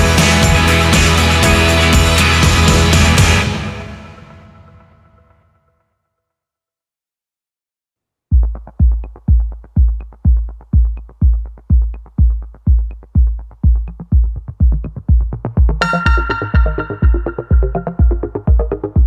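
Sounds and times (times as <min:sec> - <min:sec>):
heavy bass kick drum: 0:00.0 - 0:03.6, 0:08.3 - 0:19.0
electronic dance track: 0:00.0 - 0:04.3, 0:08.4 - 0:19.0.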